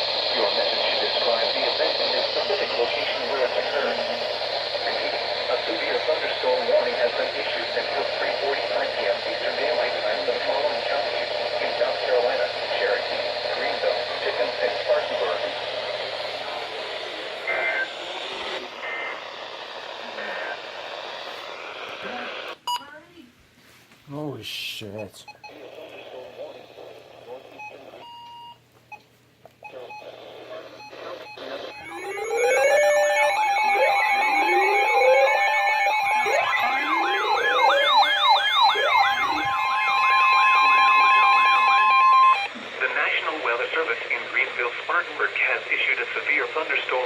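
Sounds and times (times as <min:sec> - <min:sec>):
radio static hiss: 0:00.0 - 0:22.6, 0:24.1 - 0:28.1, 0:29.6 - 0:47.0
steady alarm tones: 0:29.6 - 0:42.5
warbling digital data bursts: 0:31.3 - 0:42.5
siren yelping: 0:31.4 - 0:42.5
sirens rising slowly: 0:31.6 - 0:42.5.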